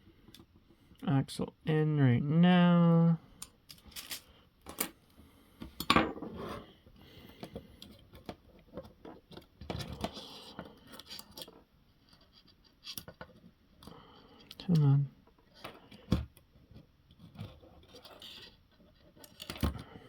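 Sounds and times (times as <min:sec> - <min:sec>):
plastic parts clicking and clacking: 0:19.1 - 0:19.8.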